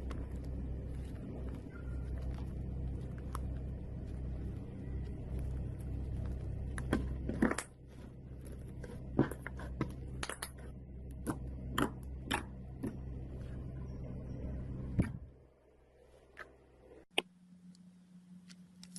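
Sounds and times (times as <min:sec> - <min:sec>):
slime squishing with pops: 0:00.0 - 0:13.1
low steady hum: 0:00.0 - 0:18.9.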